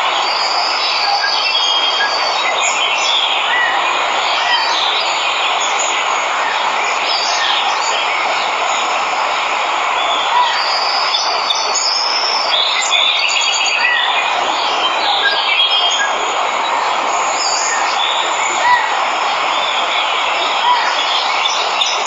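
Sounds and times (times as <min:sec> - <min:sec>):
waterfall rushing: 0:00.0 - 0:22.0
birds chirping and whistling: 0:10.0 - 0:22.0.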